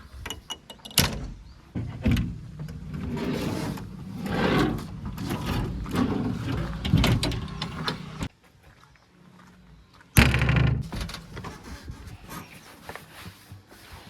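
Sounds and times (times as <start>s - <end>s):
diesel engine under load: 2.3s - 8.3s.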